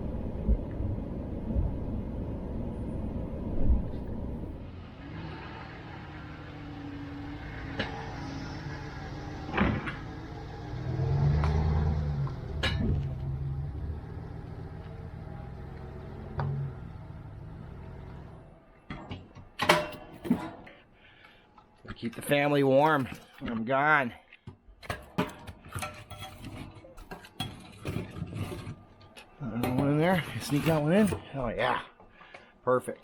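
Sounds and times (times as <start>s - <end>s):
vehicle engine running: 0.0s - 18.6s
sharp knocks and clunks: 9.5s - 10.2s.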